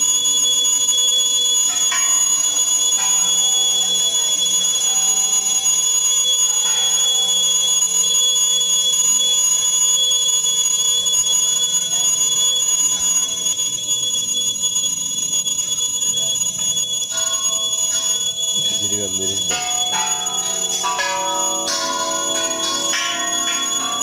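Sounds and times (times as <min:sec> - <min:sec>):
steady high-pitched tone: 0:15.9 - 0:24.0
temple bells ringing: 0:18.6 - 0:24.0.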